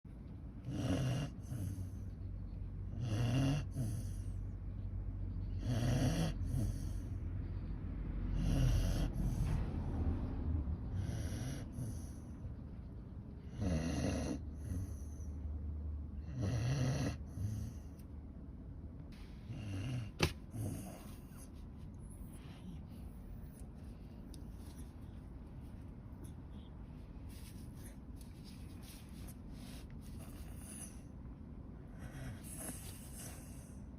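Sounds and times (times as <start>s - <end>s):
dog snoring: 0.6s - 4.5s, 5.3s - 7.2s, 8.3s - 9.6s, 10.8s - 12.4s, 13.4s - 15.3s, 16.2s - 18.0s, 19.2s - 24.9s, 28.8s - 31.1s, 31.8s - 33.8s.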